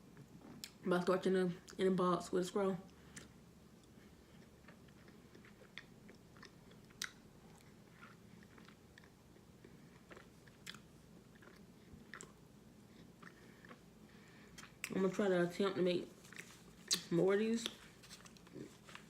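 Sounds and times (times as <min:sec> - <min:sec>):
person chewing brittle crunchy food: 0:03.0 - 0:15.0.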